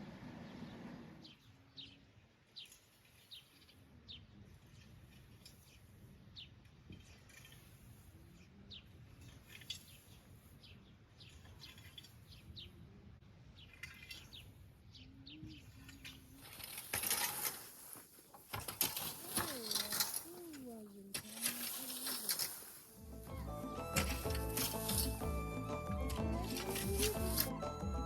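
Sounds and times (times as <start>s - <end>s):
small birds chirping: 0.4s - 16.9s.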